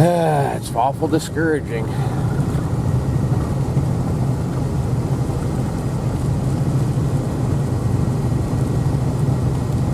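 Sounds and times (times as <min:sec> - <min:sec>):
road noise: 0:00.0 - 0:09.9
vehicle engine rumble: 0:00.0 - 0:09.9.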